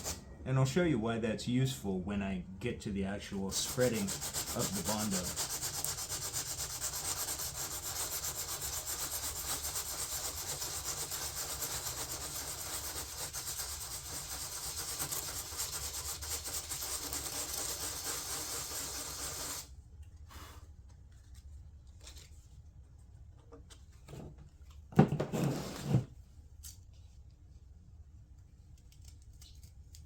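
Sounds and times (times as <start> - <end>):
sandpaper scratching: 3.4 - 19.7.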